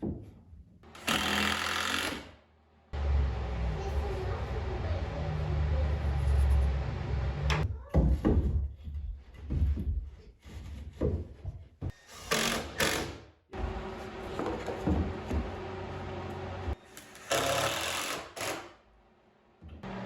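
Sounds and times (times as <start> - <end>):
power tool running: 1.0 - 2.3.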